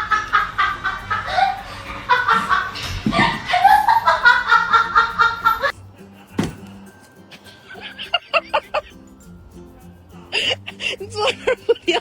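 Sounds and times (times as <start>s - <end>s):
rapid laughter: 0.0s - 6.4s, 7.3s - 9.0s.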